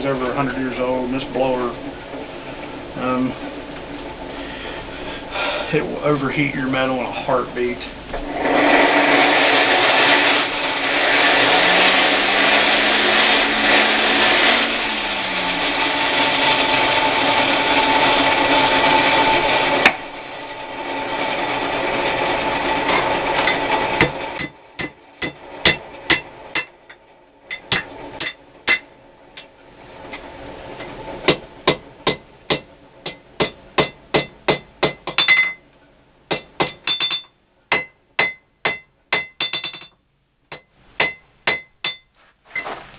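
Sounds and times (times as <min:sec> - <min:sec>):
forge blower whirring: 0:00.0 - 0:35.3
hammer ringing on anvil: 0:32.1 - 0:35.6, 0:36.3 - 0:42.1.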